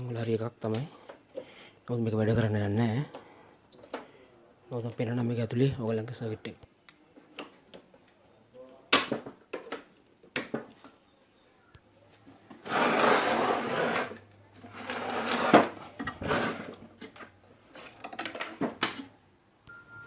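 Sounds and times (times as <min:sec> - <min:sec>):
rubbing and scraping: 0:12.6 - 0:17.0.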